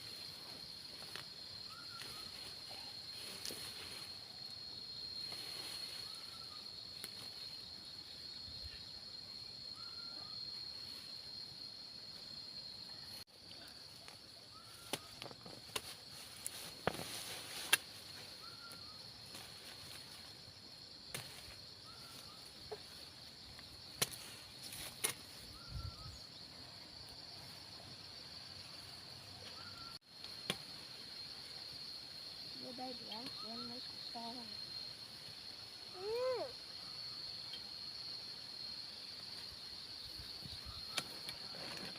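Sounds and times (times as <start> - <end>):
high-pitched insect drone: 18.0 - 41.9
faint chirp: 18.2 - 19.1, 25.3 - 26.8, 29.3 - 30.0.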